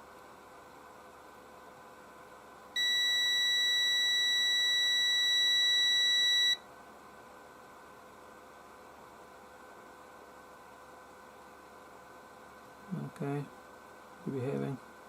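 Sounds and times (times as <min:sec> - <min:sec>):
multimeter continuity beep: 0:02.8 - 0:06.6.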